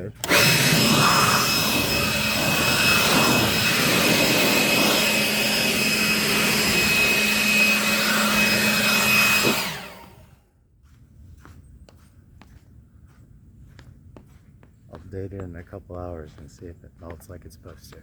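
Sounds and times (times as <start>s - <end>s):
leaf blower running: 0.0s - 10.4s.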